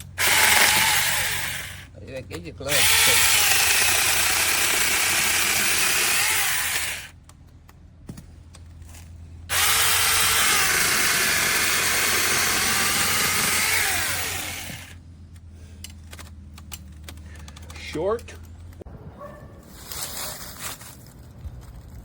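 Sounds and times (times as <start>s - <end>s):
chainsaw cutting wood: 0.0s - 1.9s, 2.7s - 7.2s, 9.5s - 15.0s.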